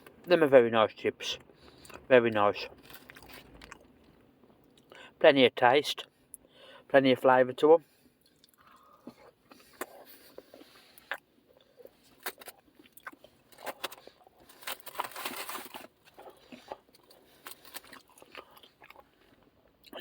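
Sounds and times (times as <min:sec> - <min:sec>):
person chewing crunchy chips: 0:02.7 - 0:05.0, 0:08.2 - 0:20.0.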